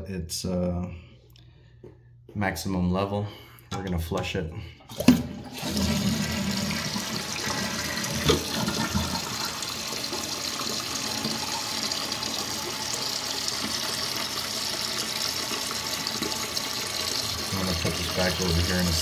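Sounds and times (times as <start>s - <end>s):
toilet flushing and refilling: 4.9s - 19.0s.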